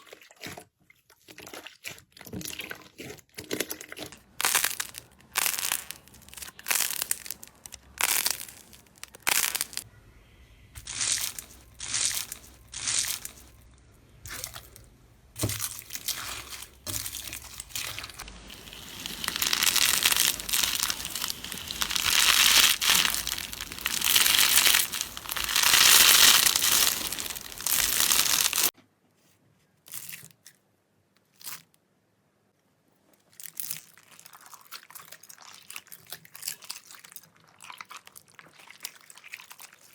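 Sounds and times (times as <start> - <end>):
slime squishing and crackling: 1.7 - 9.8, 10.8 - 13.7, 15.4 - 28.7.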